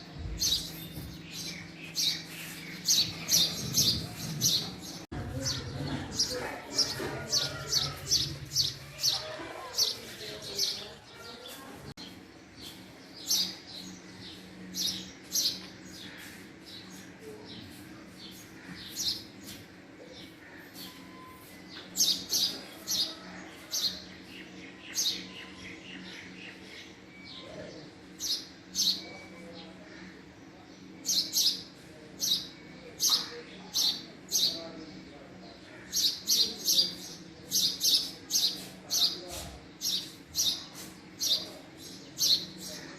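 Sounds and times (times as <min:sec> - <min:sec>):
sparrow chirping: 0:00.2 - 0:17.1.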